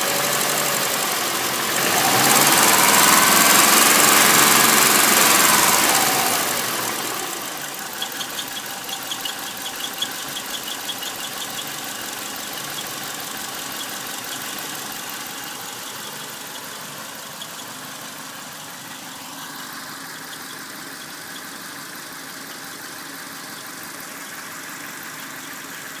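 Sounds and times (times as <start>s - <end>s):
car engine idling: 0.0s - 26.0s
rhythmic high-pitched squeak: 7.8s - 18.0s.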